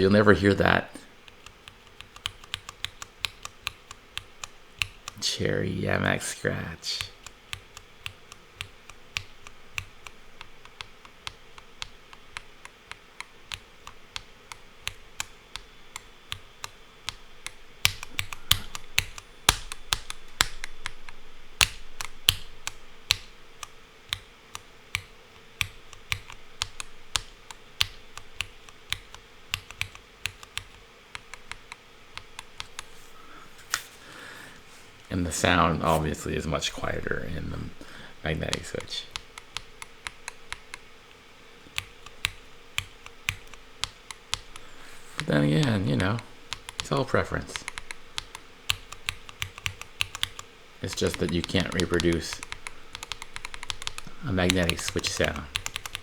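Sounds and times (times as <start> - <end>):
keyboard key presses clacking: 1.2 - 5.2, 7.0 - 32.9, 41.6 - 44.6, 45.2 - 56.0.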